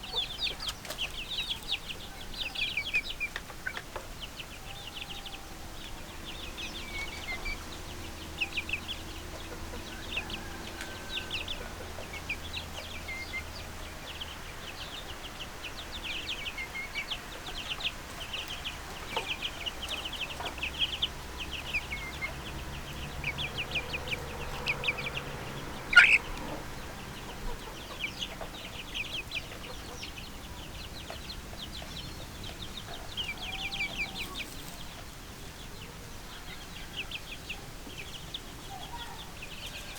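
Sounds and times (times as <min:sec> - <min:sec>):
chicks peeping: 0:00.0 - 0:39.9
loud single chick call: 0:25.9 - 0:26.6.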